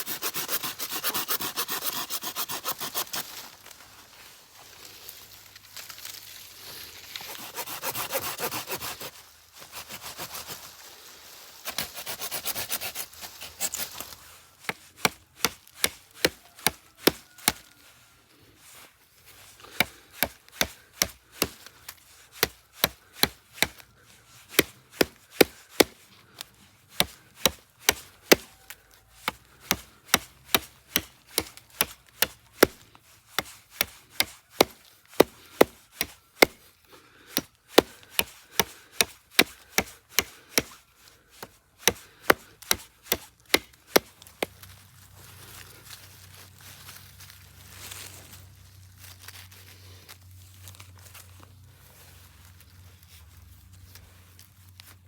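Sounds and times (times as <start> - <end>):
hand saw cutting wood: 0.0 - 3.4, 7.1 - 10.7, 11.6 - 17.7, 18.6 - 44.6.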